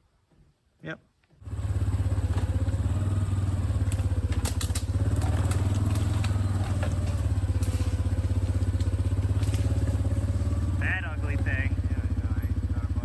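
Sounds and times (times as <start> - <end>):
atv engine running: 1.4 - 13.0.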